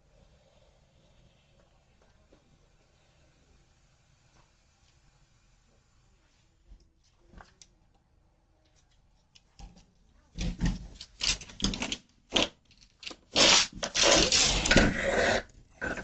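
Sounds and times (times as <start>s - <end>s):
alligator scraping against door: 13.4s - 16.0s.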